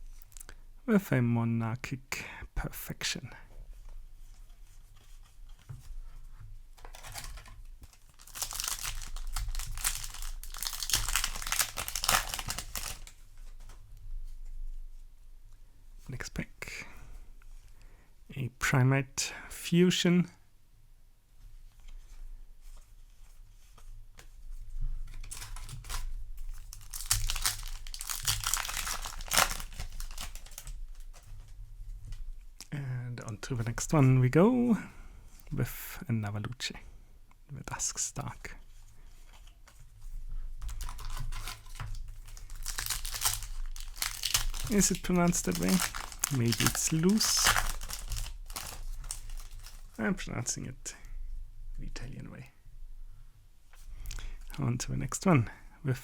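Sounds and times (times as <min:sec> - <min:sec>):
foil wrapper tearing and crinkling: 0:06.8 - 0:13.2, 0:25.1 - 0:31.3, 0:40.6 - 0:50.0.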